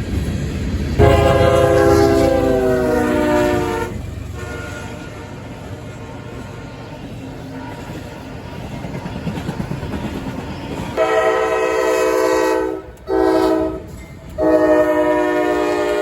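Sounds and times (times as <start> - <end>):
freight train rumbling: 0.0 - 16.0
locomotive air horn blasts: 1.0 - 6.6, 11.0 - 16.0.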